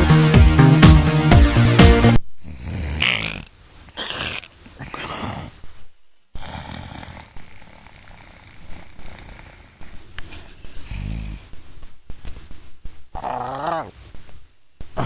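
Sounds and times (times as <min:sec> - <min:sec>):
steady background hiss: 0:00.0 - 0:15.0
person snoring: 0:02.4 - 0:05.6, 0:06.4 - 0:11.6.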